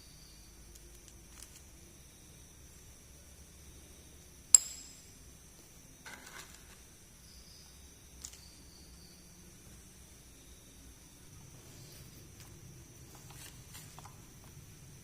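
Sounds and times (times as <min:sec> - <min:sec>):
soft rustle of handling: 0:11.5 - 0:14.6.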